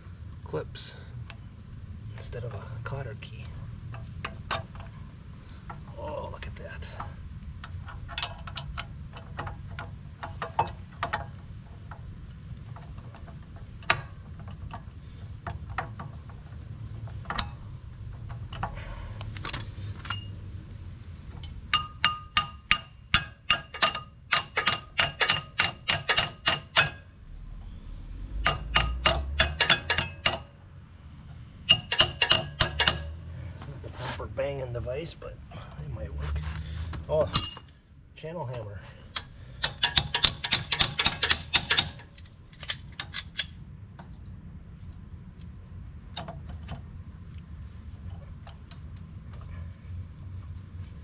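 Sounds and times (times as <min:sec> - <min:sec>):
steady low hum: 0:00.0 - 0:51.0
hammer striking steel: 0:21.7 - 0:27.0, 0:28.4 - 0:30.5, 0:31.7 - 0:33.2.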